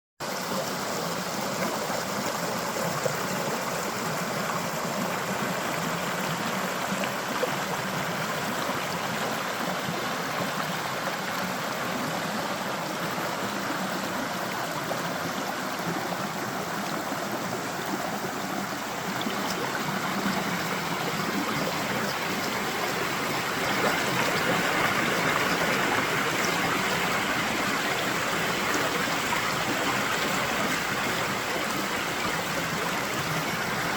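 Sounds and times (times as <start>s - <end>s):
creek water flowing and splashing: 0.2s - 33.9s.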